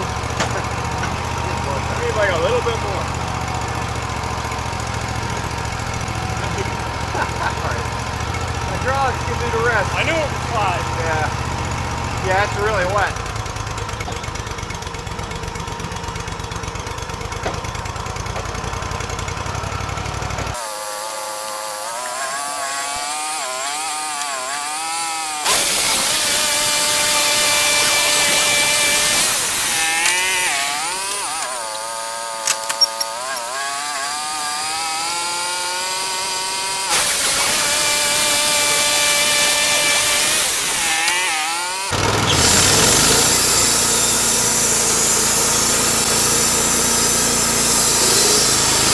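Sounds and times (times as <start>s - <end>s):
bandsaw sawmill cutting log: 0.0s - 48.9s
sharp clicks: 25.5s - 33.6s.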